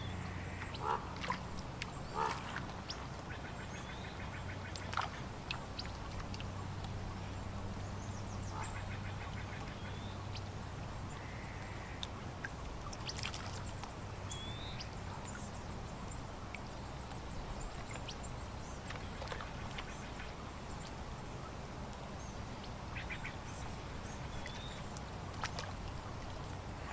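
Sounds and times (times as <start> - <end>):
small birds calling: 0.0 - 12.2, 12.8 - 21.0, 22.2 - 25.7
water lapping at shore: 0.0 - 26.9
ducks quacking: 0.8 - 1.1.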